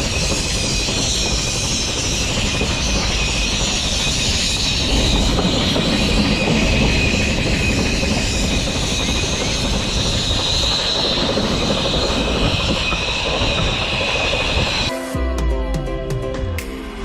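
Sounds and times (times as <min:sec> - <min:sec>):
high wheel squeal: 0:00.0 - 0:14.9
train wheels rumbling on rails: 0:00.0 - 0:14.9.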